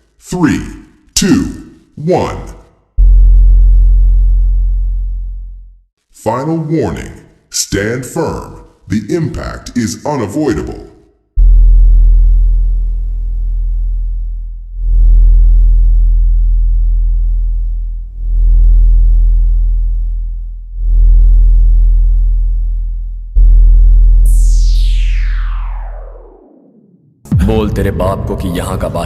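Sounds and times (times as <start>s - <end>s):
deep synthesized bass hits: 3.0s - 5.8s, 11.4s - 29.0s
tone sweeping down: 24.2s - 27.5s.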